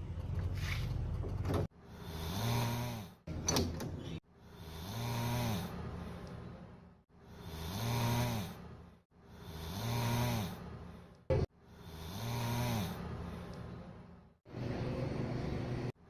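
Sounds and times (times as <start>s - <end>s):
person snoring: 1.9s - 3.1s, 4.5s - 5.8s, 7.3s - 8.6s, 9.3s - 10.6s, 11.7s - 13.1s.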